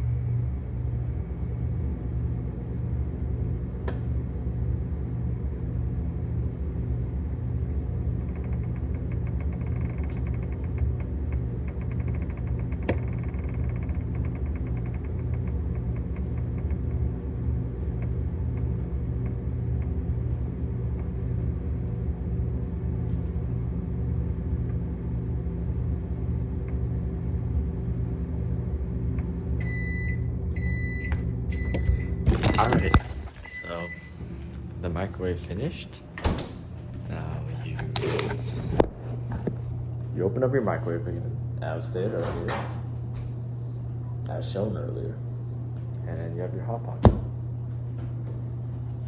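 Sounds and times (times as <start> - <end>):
microwave oven humming: 0.0 - 49.0
microwave beeping: 7.2 - 21.3, 29.2 - 38.9.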